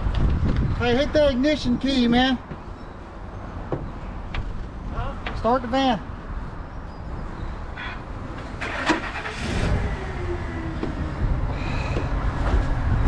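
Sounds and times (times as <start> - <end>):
van engine starting and running: 8.3 - 13.0.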